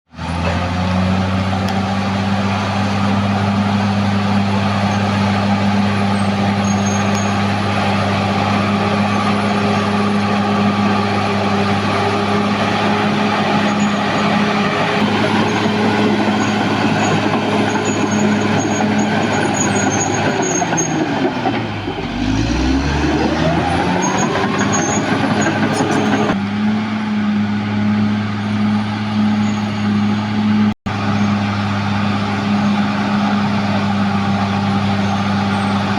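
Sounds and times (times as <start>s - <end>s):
bulldozer diesel engine running: 0.1s - 35.9s.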